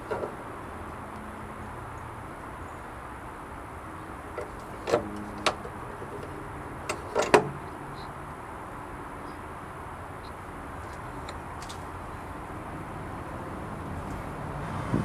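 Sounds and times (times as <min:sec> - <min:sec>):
latch hardware clicks and knocks: 0:04.3 - 0:07.6.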